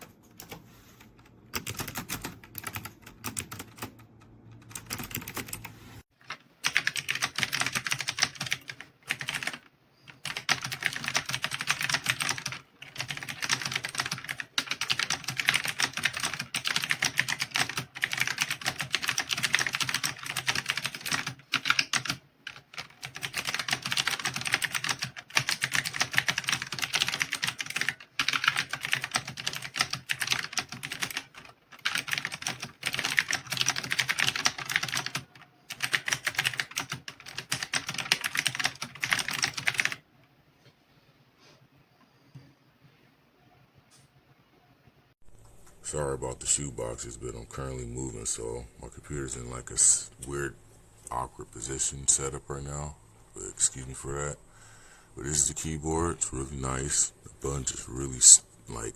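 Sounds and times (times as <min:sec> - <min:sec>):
fast typing on mechanical keyboard: 0:01.2 - 0:40.0.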